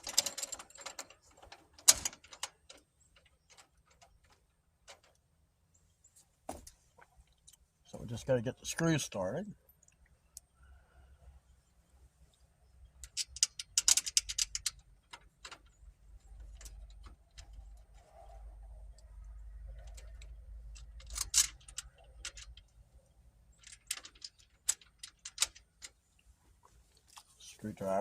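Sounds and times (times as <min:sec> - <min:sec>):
small metal hardware clinking: 0:00.0 - 0:05.2, 0:13.0 - 0:17.7, 0:19.8 - 0:22.8, 0:23.5 - 0:26.1.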